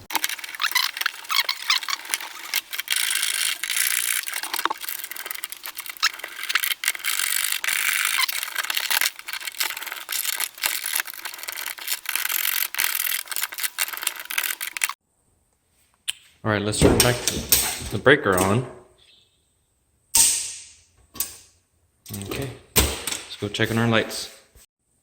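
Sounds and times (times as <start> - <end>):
plastic and metal scraping: 0.0 - 15.0.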